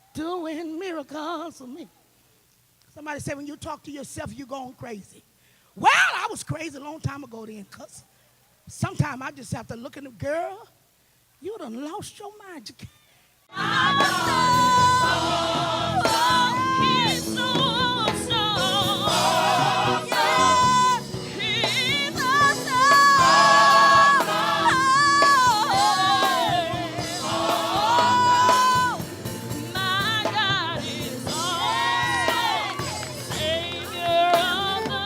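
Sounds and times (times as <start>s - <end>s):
gospel singing voice: 13.4s - 35.0s
instrumental accompaniment: 13.5s - 35.0s.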